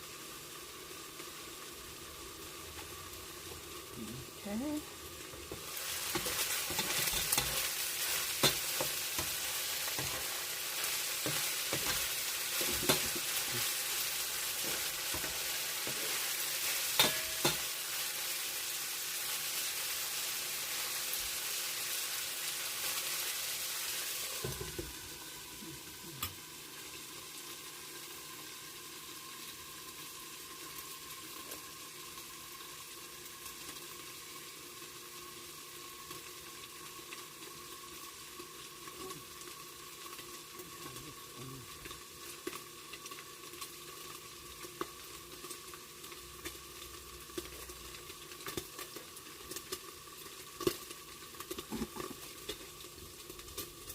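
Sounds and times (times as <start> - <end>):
pork sizzling in a pan: 0.0 - 53.9
utensil scraping a pan: 5.9 - 10.3.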